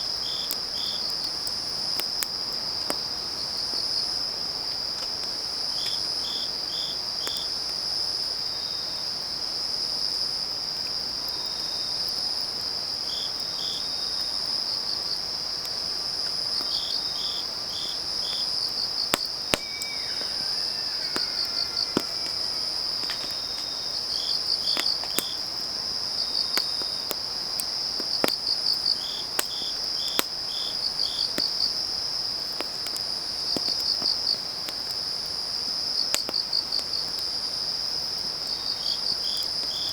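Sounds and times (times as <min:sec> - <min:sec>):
crickets trilling: 0:00.0 - 0:39.9
insect chirping: 0:16.7 - 0:27.9
wood fire crackling: 0:19.1 - 0:28.8.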